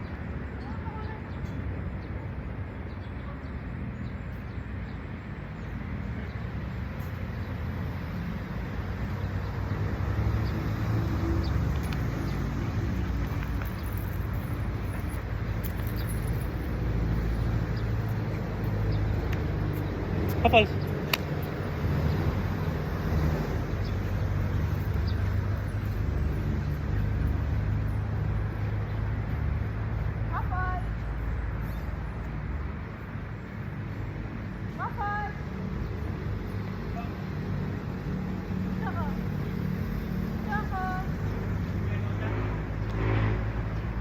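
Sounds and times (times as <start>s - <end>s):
road traffic hum: 0.0s - 44.0s.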